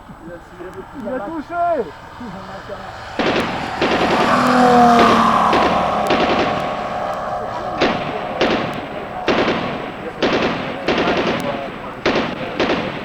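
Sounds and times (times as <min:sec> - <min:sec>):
model engine drone: 0:00.0 - 0:13.0
machine-gun sound effect bursts: 0:07.8 - 0:13.0.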